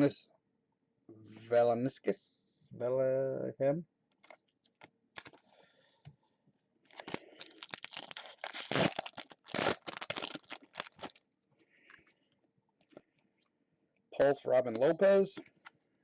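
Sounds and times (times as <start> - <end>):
wrapper tearing and crinkling: 5.1 - 5.4, 6.9 - 11.2.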